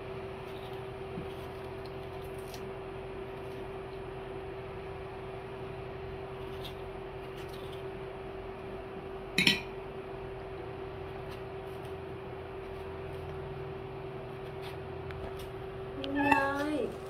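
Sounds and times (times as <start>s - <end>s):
steady low hum: 0.0s - 17.0s
dishware clinking: 9.4s - 9.7s.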